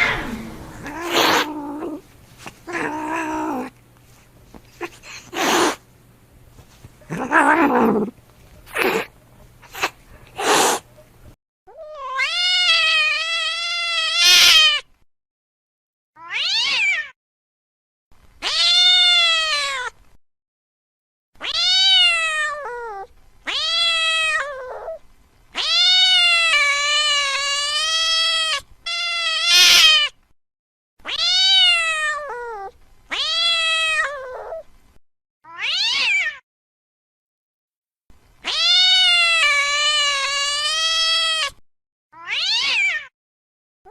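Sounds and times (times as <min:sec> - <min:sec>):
angry cat yowling: 0:00.0 - 0:02.0, 0:02.7 - 0:03.7, 0:07.1 - 0:08.1, 0:11.8 - 0:14.8, 0:25.6 - 0:30.1, 0:35.5 - 0:36.4, 0:38.4 - 0:41.5, 0:42.2 - 0:43.1.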